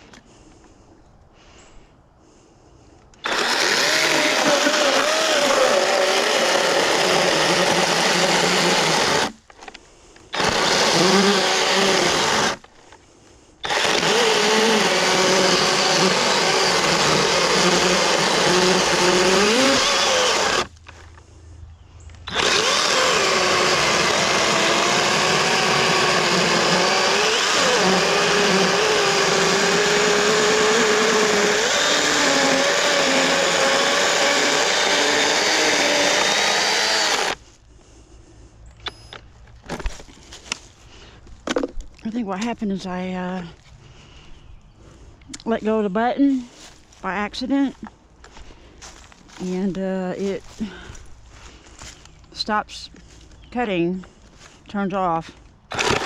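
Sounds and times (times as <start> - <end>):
electric chainsaw cutting wood: 3.2 - 9.7, 10.3 - 12.7, 13.6 - 21.0, 22.3 - 37.4, 55.7 - 56.0.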